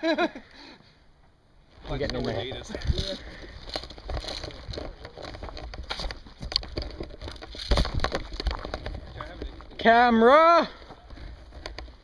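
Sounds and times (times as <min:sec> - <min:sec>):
irregular clicks and knocks: 0:02.9 - 0:09.8.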